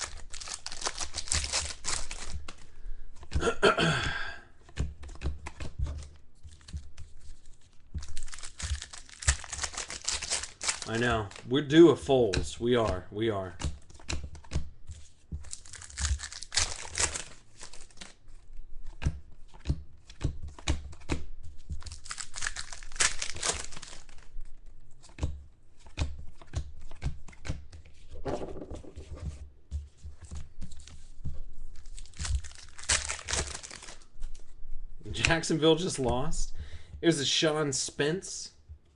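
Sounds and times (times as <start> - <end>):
wrappers tearing and crinkling: 0.0 - 2.6, 8.0 - 11.8, 15.4 - 18.2, 21.8 - 24.4, 31.7 - 34.2
cards clicking: 0.0 - 3.4, 31.8 - 34.4.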